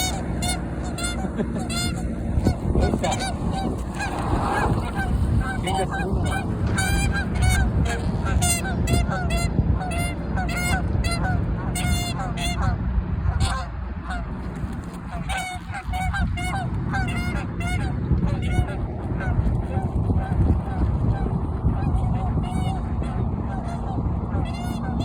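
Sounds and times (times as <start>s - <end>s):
geese honking: 0.0s - 25.0s.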